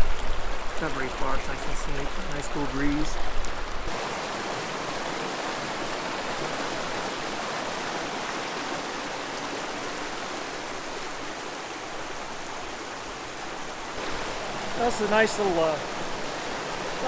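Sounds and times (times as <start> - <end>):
water rushing down cascade: 0.0 - 17.0.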